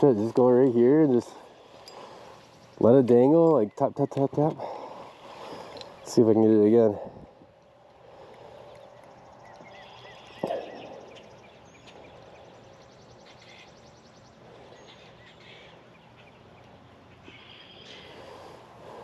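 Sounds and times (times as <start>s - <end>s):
birds calling and trilling: 0.0s - 19.0s
faint steady background noise: 0.0s - 19.0s.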